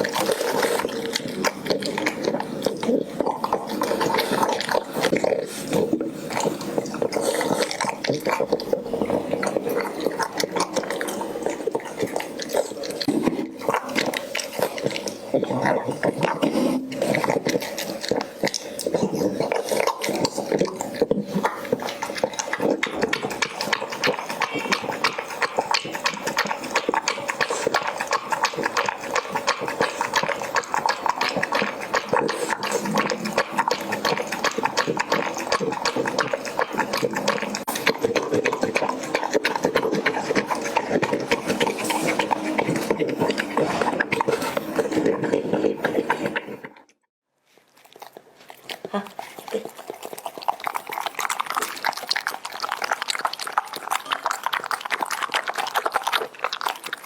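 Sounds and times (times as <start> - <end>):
dog chewing and crunching food: 0.0 - 57.0.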